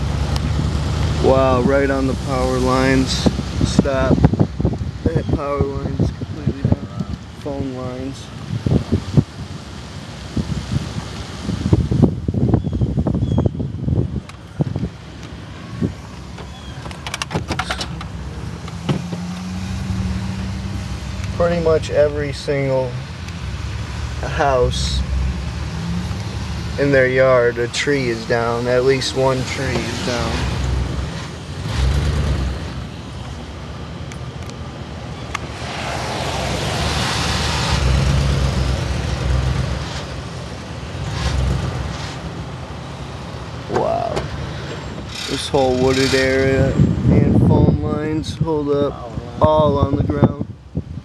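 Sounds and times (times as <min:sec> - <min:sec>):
car road and engine rumble: 0:00.0 - 0:51.0
thump: 0:18.8 - 0:19.2
rushing hiss: 0:35.4 - 0:38.9.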